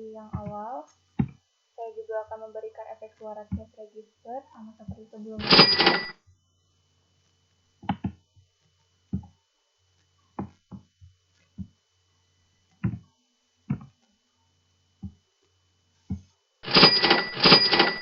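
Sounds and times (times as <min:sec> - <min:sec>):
faint low electrical hum: 0:00.0 - 0:18.0.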